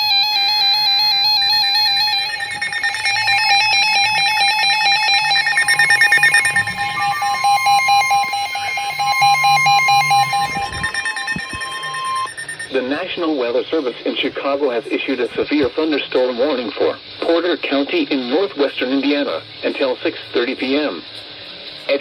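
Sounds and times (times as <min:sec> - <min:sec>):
warbling electronic tones: 0:00.0 - 0:13.0
fast pulsing alarm beeps: 0:00.0 - 0:13.1
steady warning tone: 0:00.0 - 0:13.9.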